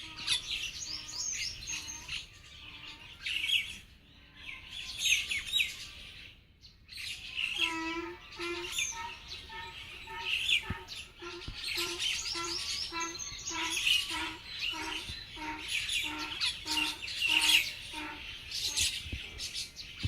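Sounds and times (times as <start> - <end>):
birds chirping: 0.0 - 20.0
bird call repeated: 7.5 - 19.0.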